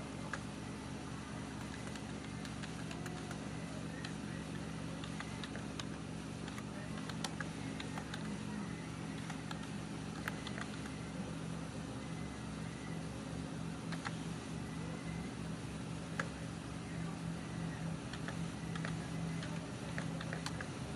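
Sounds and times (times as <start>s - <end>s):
steady low hum: 0.0s - 20.9s
keyboard keys clicking: 1.6s - 3.4s, 18.1s - 20.7s.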